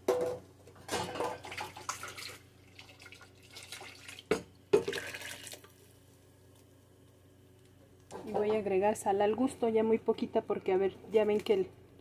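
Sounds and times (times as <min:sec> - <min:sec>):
water sloshing and pouring: 0:01.0 - 0:05.6.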